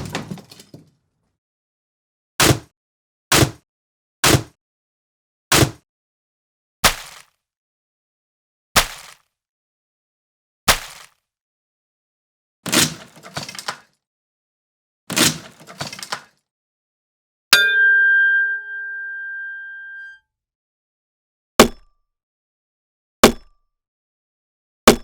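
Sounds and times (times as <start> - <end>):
axe chopping into wood: 2.4 - 2.7, 3.4 - 3.6, 5.6 - 5.8, 23.2 - 23.4
ringing metallic strike: 17.6 - 20.2.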